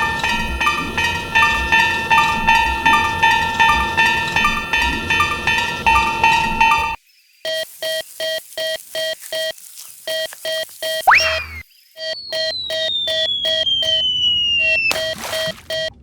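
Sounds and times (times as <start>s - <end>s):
fast run of bell tones: 0.0s - 7.0s
railroad crossing warning bell: 0.0s - 7.0s.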